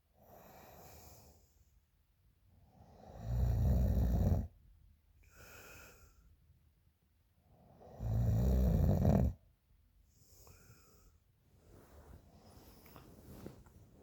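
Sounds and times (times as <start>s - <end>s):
quiet breath: 0.0s - 2.0s, 5.2s - 6.6s, 10.0s - 14.0s
woman snoring: 3.0s - 4.5s, 7.9s - 9.4s.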